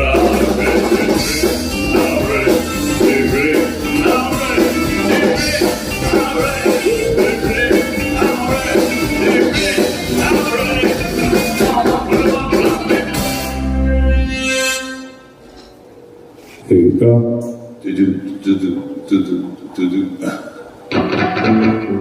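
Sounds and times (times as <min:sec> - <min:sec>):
rock music with guitar and singing: 0:00.0 - 0:14.4, 0:20.9 - 0:22.0.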